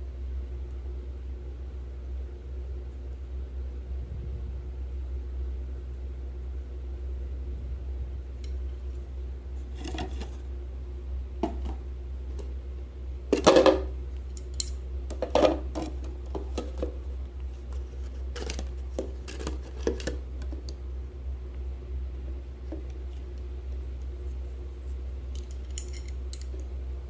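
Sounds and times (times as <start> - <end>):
steady low hum: 0.0 - 27.0
small objects clicking and scraping: 17.6 - 20.7, 25.3 - 26.6.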